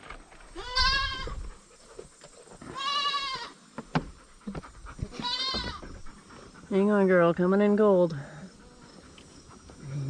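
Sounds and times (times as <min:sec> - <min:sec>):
goat kids bleating: 0:00.5 - 0:01.4, 0:02.6 - 0:03.6, 0:05.0 - 0:05.8.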